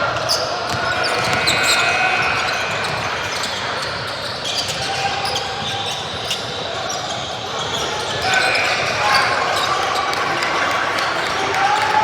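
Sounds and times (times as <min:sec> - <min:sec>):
gymnasium hall noise: 0:00.0 - 0:12.0
sneaker squeaks: 0:00.1 - 0:10.5
basketball bouncing: 0:00.7 - 0:01.6.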